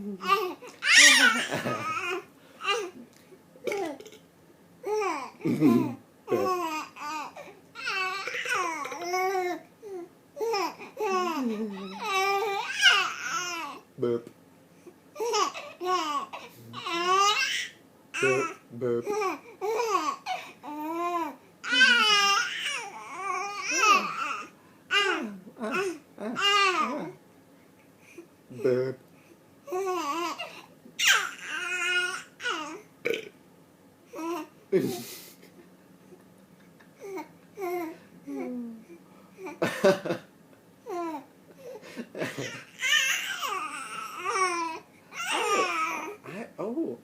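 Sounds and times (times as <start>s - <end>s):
baby squealing and cooing: 0.2s - 3.0s, 4.9s - 9.6s, 10.4s - 13.8s, 15.2s - 17.8s, 19.1s - 27.1s, 29.8s - 32.8s, 42.6s - 46.2s.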